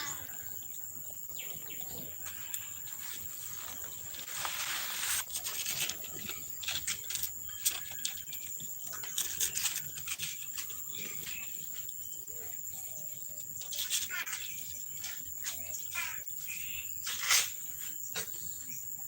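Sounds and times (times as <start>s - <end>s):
insects chirring: 0.0s - 19.0s
rustles and clicks: 2.0s - 11.9s
short hissing noise: 3.0s - 5.3s.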